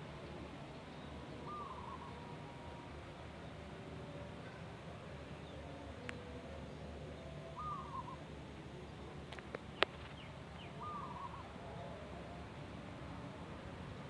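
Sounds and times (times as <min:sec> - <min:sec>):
faint dove cooing: 0:01.4 - 0:02.9, 0:07.4 - 0:08.3, 0:10.8 - 0:13.5.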